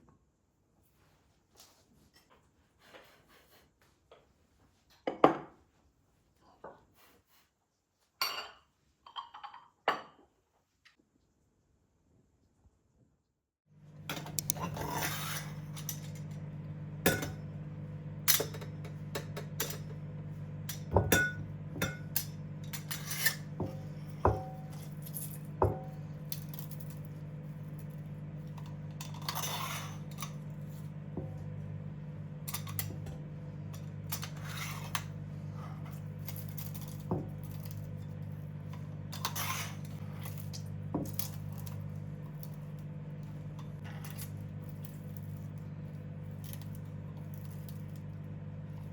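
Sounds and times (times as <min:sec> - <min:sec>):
steady low hum: 0:13.8 - 0:48.9
scrapes of dishes: 0:14.6 - 0:16.2, 0:29.0 - 0:30.4, 0:39.1 - 0:40.4.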